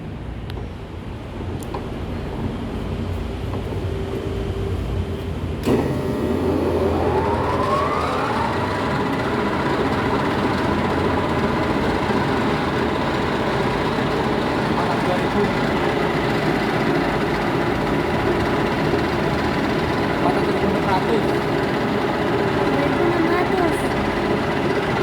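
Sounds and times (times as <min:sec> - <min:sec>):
lathe gear whine: 0:03.3 - 0:25.0
lathe motor humming: 0:04.2 - 0:25.0.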